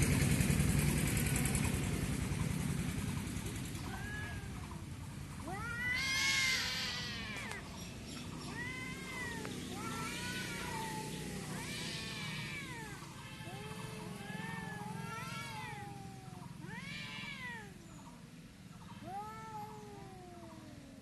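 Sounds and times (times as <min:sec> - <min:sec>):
cats yowling in a fight: 0:03.8 - 0:18.2, 0:18.8 - 0:21.0.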